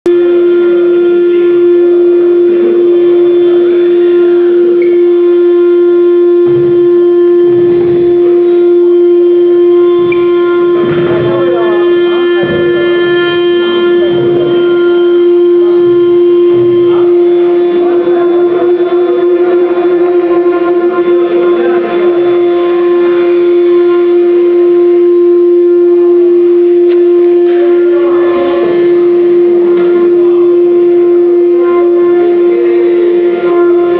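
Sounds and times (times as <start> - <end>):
router spindle whine: 0.1 - 33.9.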